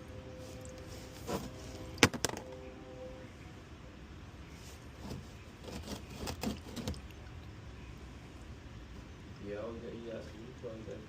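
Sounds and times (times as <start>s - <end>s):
background music note: 0.0s - 3.5s.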